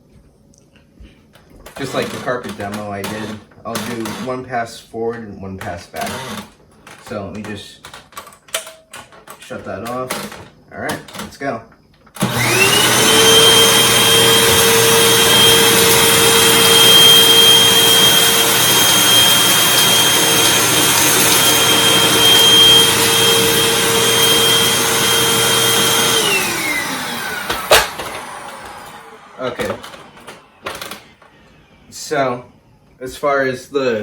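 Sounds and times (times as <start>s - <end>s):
vacuum cleaner running: 1.6s - 4.4s, 6.0s - 7.2s, 12.2s - 33.0s.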